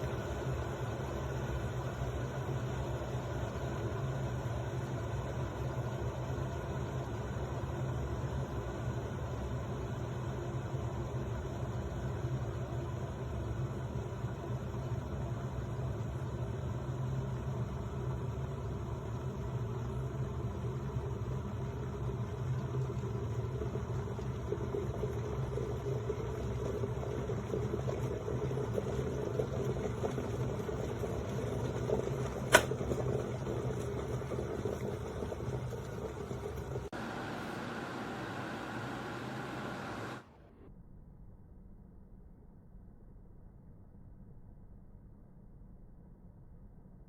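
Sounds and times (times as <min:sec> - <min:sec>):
electric kettle heating water: 0:00.0 - 0:40.3
kettle switch click: 0:32.5 - 0:32.8.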